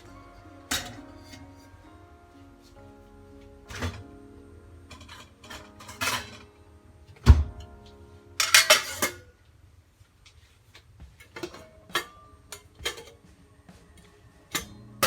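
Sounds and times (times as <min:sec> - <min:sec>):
dishes clattering: 0:00.7 - 0:01.5, 0:04.9 - 0:06.5, 0:08.4 - 0:09.3, 0:11.2 - 0:13.2.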